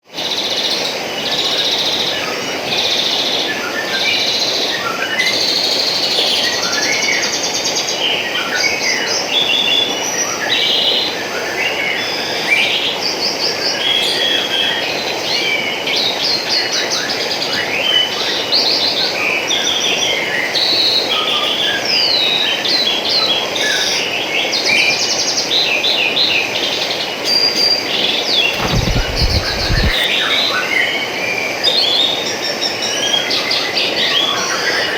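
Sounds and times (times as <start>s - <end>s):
low rumble: 28.6s - 30.0s.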